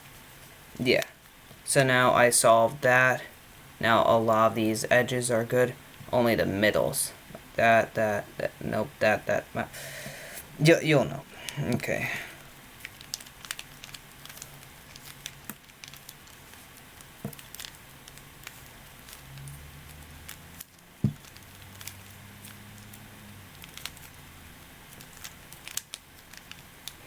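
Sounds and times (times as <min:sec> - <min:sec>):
puzzle cube clicking and rattling: 0:12.8 - 0:19.5, 0:24.9 - 0:27.0.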